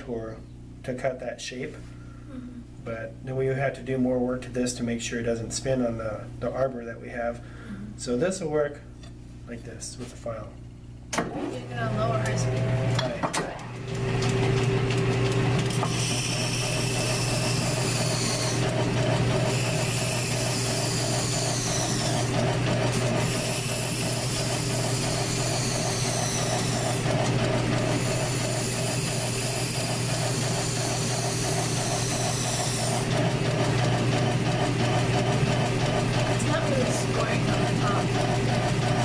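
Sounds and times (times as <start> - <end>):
lathe humming: 13.8 - 39.0
file rasping on spinning wheel: 15.8 - 39.0.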